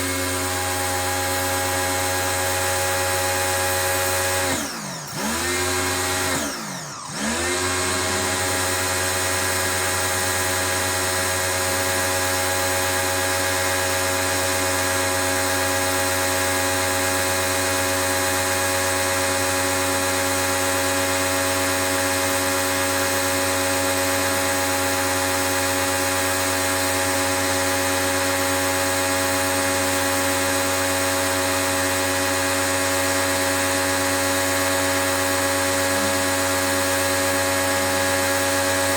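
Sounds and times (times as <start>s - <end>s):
pressure washer motor whine: 0.0s - 38.9s.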